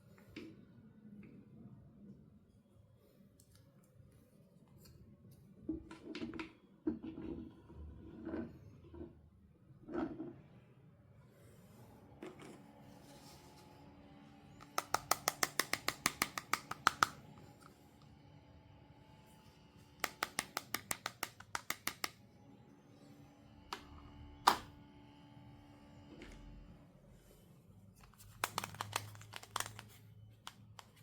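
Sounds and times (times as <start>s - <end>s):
rapid sharp clicks: 14.6s - 17.2s.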